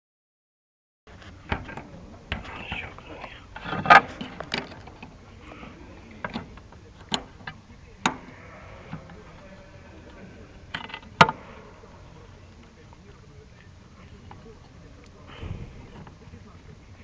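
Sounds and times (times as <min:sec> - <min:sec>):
knocks and clicks of parts handled: 0:03.6 - 0:05.2.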